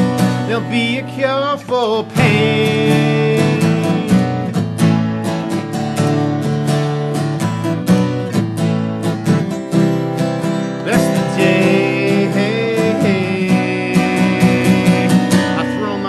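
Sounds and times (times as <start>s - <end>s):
strummed acoustic guitar: 0.0s - 16.0s
wavering melody line: 11.4s - 16.0s.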